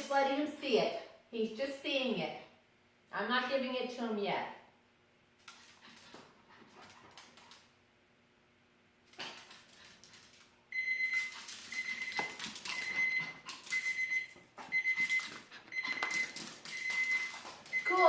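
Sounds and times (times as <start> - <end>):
kitchen timer beeping: 10.8 - 18.0.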